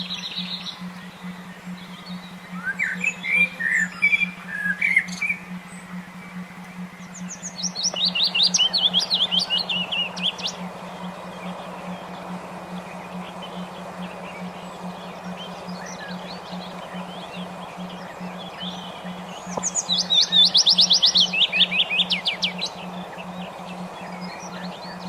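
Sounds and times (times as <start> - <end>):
songbird chirping: 0.0 - 25.0
steady low hum: 0.0 - 25.0.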